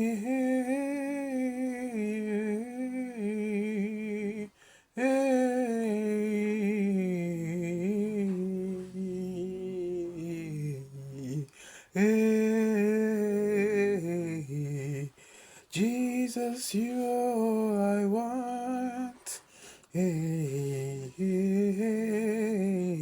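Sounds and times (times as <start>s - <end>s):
person humming a slow melody: 0.0s - 15.1s.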